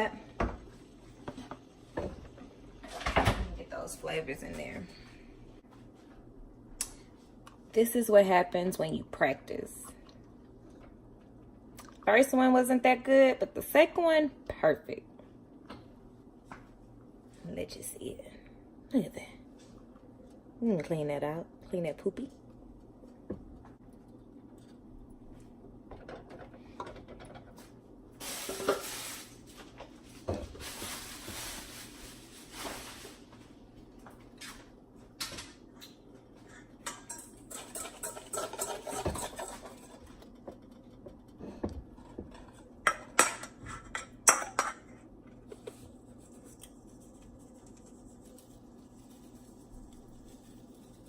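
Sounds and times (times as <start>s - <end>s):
dishes and utensils clinking: 36.5s - 40.0s.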